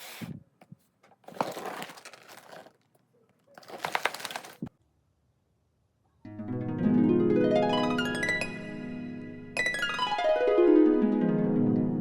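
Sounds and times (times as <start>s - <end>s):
hard plastic clicking and rustling: 1.0s - 4.7s.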